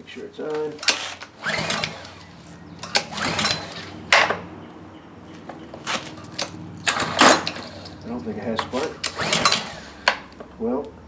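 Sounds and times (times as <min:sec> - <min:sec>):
recoil starter cord pulls: 0:00.4 - 0:04.6, 0:05.2 - 0:10.9.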